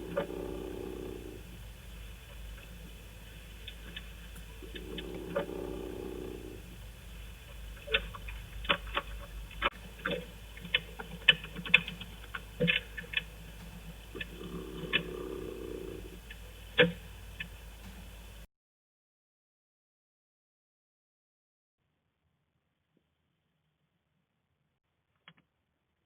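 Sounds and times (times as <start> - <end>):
chicken snoring: 0.0 - 7.2, 13.9 - 17.4.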